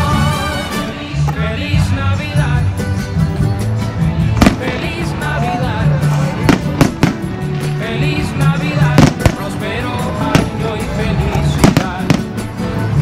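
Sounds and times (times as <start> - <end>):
music playing: 0.0 - 13.0
fireworks banging: 4.3 - 5.4, 6.0 - 12.9.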